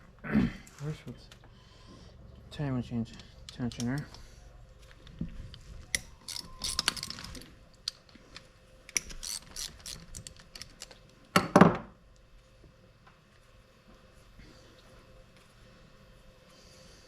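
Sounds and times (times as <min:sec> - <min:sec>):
hand ratchet clicking: 0:06.0 - 0:07.4, 0:08.9 - 0:11.0.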